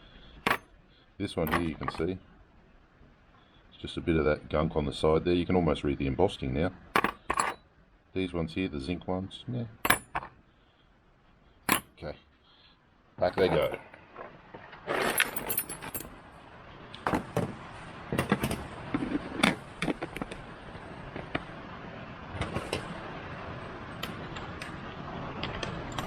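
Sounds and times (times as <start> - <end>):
metal keys clinking: 14.9 - 16.1.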